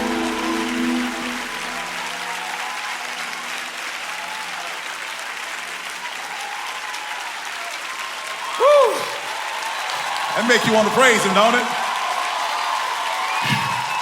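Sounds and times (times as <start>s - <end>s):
gospel song held chord: 0.0s - 3.9s
crowd applauding: 0.0s - 14.0s.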